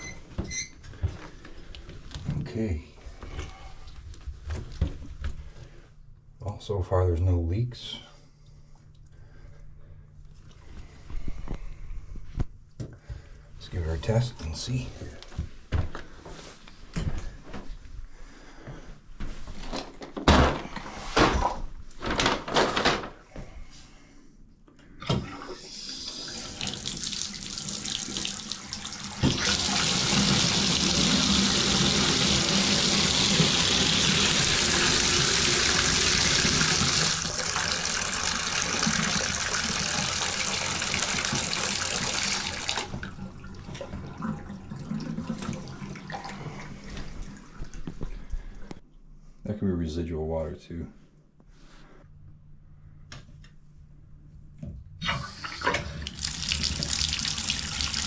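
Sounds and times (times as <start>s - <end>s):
shower water running: 25.2s - 47.9s, 55.0s - 58.0s.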